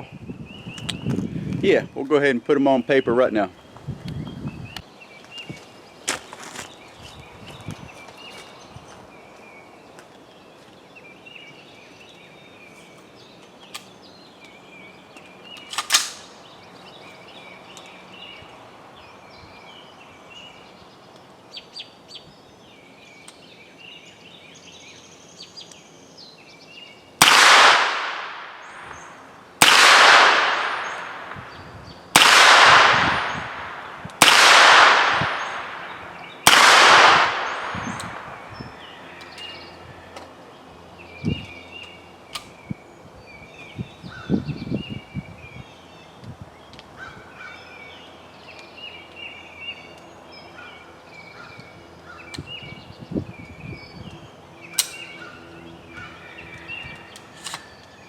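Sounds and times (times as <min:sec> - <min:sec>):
gunshots ringing out: 0:15.7 - 0:16.4, 0:27.2 - 0:31.6, 0:32.2 - 0:38.4.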